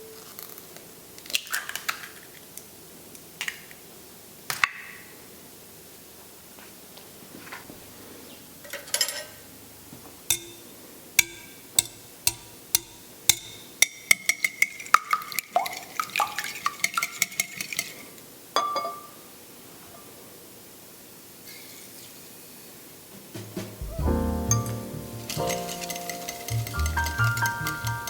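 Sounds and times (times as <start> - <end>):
metal utensil clinking on a dish: 10.3 - 14.9, 16.8 - 18.0, 25.3 - 28.0.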